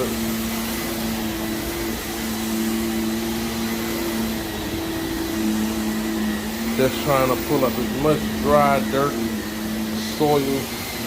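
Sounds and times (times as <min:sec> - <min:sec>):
vacuum cleaner running: 0:00.0 - 0:11.0.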